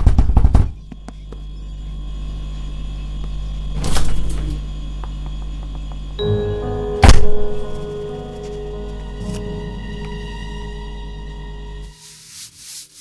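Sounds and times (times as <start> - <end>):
low mechanical hum: 0.0 - 13.0
held tone: 6.2 - 8.9.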